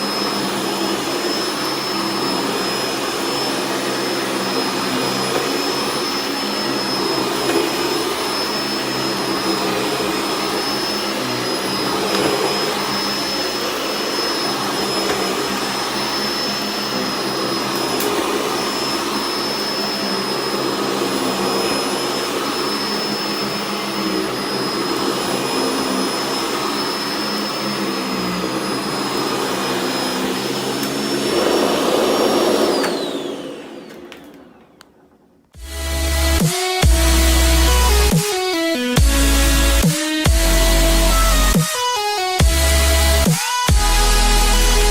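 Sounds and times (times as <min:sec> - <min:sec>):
vacuum cleaner whining: 0:00.0 - 0:44.9
vacuum sucking up salt: 0:21.3 - 0:34.1.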